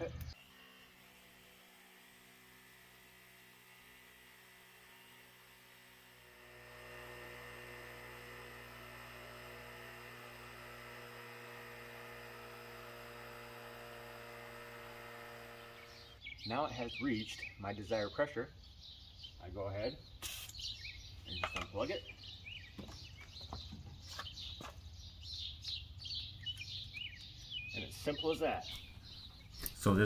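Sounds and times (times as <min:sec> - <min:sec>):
air compressor humming: 0:00.0 - 0:16.4.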